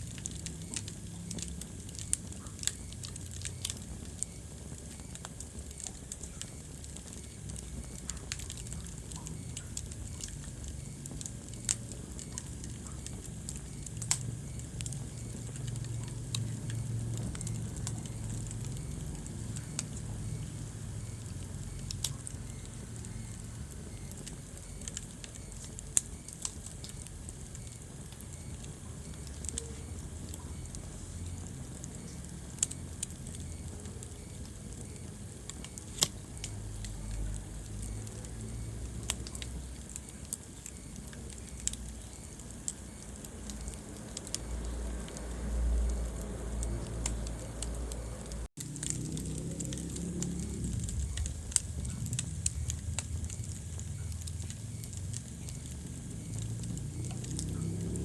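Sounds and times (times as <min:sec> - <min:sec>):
fire crackling and popping: 0:00.0 - 0:58.0
fire rumbling: 0:00.0 - 0:58.0.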